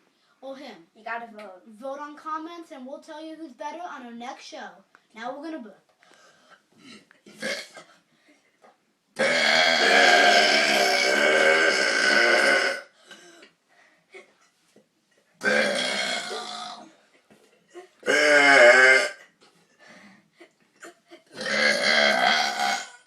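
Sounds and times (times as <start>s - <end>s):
drawn-out burps: 6.8s - 8.0s, 9.2s - 13.0s, 15.4s - 17.0s, 18.0s - 19.4s, 21.3s - 23.0s.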